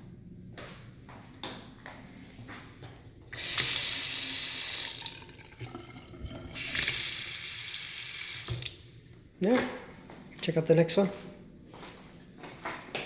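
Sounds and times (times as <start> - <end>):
faucet running into sink: 3.3 - 8.9.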